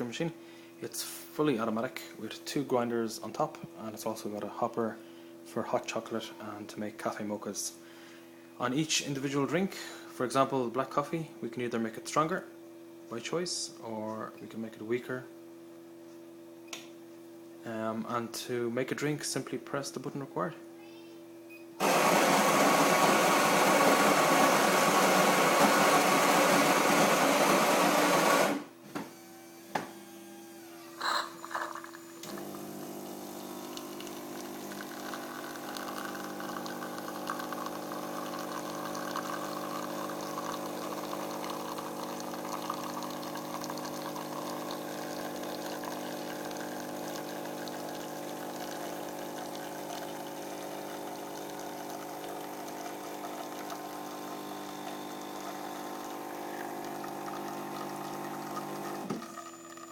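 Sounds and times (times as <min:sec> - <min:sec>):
coffee bean grinder: 0:21.8 - 0:28.7, 0:30.0 - 0:59.9
pump humming: 0:21.8 - 0:59.9
coffee pouring: 0:31.0 - 0:59.9.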